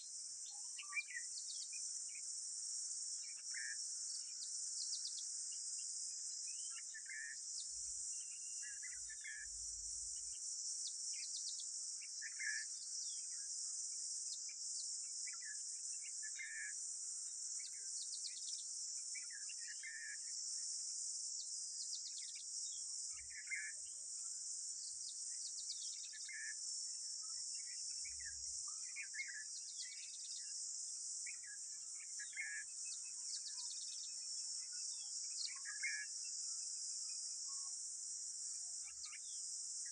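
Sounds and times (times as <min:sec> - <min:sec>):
crickets chirping chorus: 0:00.0 - 0:39.9.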